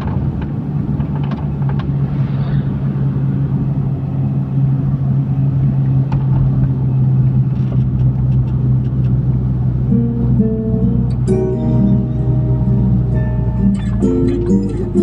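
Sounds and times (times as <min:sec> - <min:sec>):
vehicle engine drone and rumble: 0:00.0 - 0:15.0
plucked music notes: 0:09.8 - 0:15.0.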